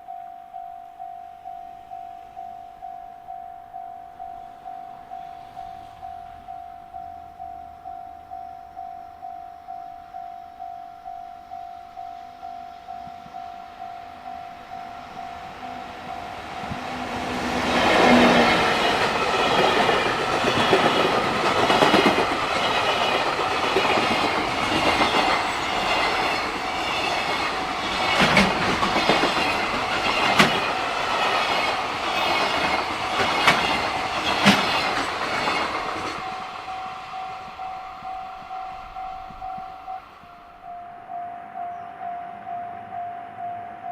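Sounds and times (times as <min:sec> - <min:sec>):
level crossing bell ringing: 0:00.0 - 0:16.7, 0:36.2 - 0:43.9
freight train rumbling: 0:12.0 - 0:43.8
wheels clacking over rail joints: 0:16.2 - 0:39.6.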